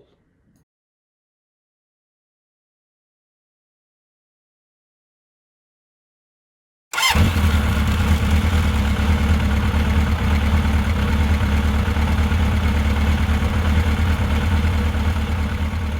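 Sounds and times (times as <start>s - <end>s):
motorcycle engine idling: 7.0s - 15.9s.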